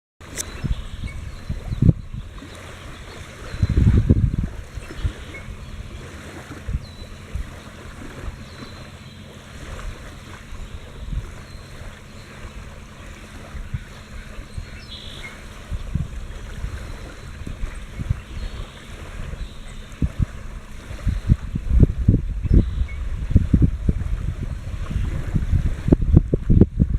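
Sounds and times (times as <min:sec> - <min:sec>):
ocean waves washing on beach: 0:00.2 - 0:26.9
wind thumps on microphone: 0:00.3 - 0:02.6, 0:03.4 - 0:08.5, 0:15.6 - 0:26.9.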